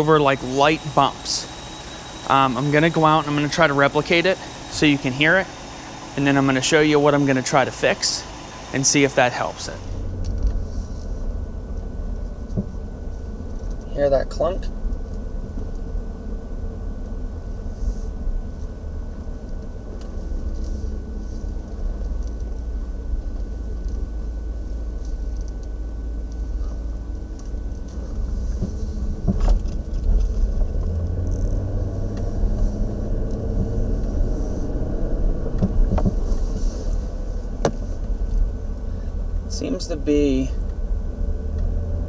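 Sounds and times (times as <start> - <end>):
road and engine rumble in car: 0.0 - 42.0
suspension clunk: 27.4 - 36.6.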